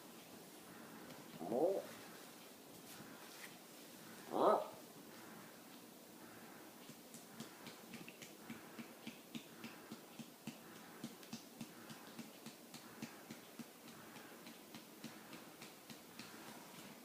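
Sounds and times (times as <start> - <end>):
soft pats on a back: 6.8 - 17.0.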